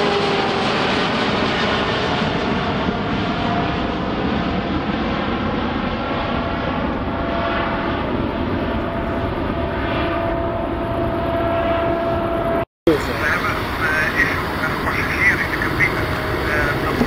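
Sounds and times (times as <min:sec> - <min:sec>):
jet engines rumbling: 0:00.0 - 0:17.0
high whine: 0:06.4 - 0:17.0.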